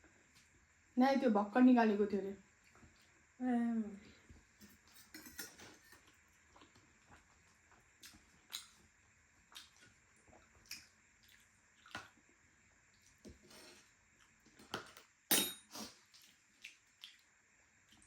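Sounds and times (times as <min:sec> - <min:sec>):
cutlery and dishes clinking: 0:04.9 - 0:06.0, 0:15.3 - 0:15.7.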